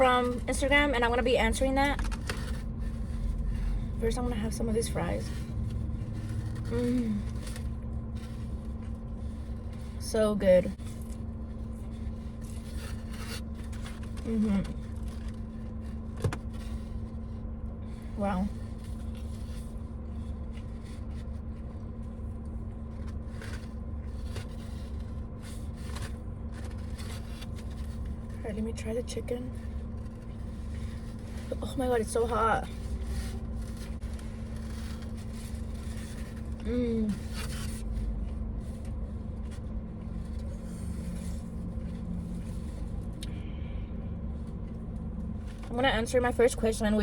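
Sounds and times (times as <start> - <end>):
low hum: 0.0 - 47.0
soft eating crunches: 5.4 - 10.0, 10.8 - 28.4, 32.6 - 43.4
food packaging rustling: 10.8 - 17.2, 18.6 - 28.4, 32.7 - 36.6.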